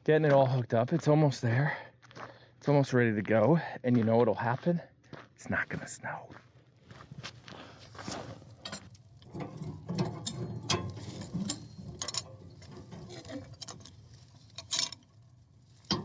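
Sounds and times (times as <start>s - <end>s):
metal clicks and clanks: 8.6s - 16.0s.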